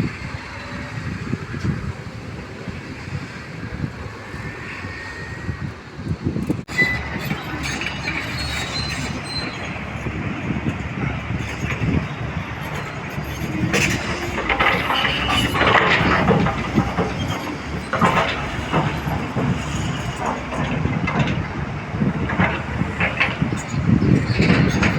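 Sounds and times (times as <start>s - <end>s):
heavy machinery engine drone: 0.0s - 24.9s
metallic clanks and squeals: 6.4s - 24.9s.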